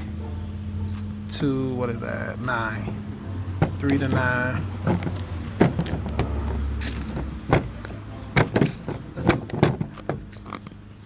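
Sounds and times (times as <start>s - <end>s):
sharp clicks and knocks of handling: 3.6s - 10.8s.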